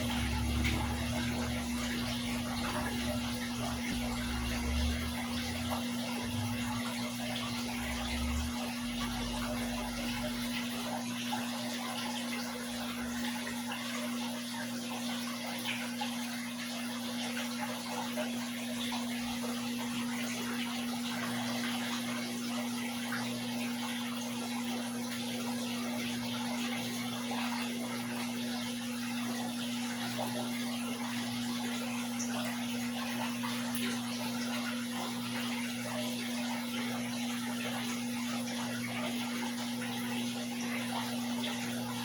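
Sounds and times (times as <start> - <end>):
constant low hum: 0.0 - 15.8
water running and splashing: 0.0 - 42.0.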